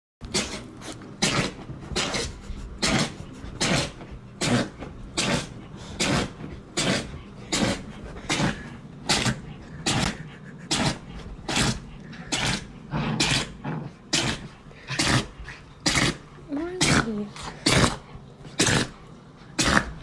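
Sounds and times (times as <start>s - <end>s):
dog sneezing: 0.3s - 10.1s.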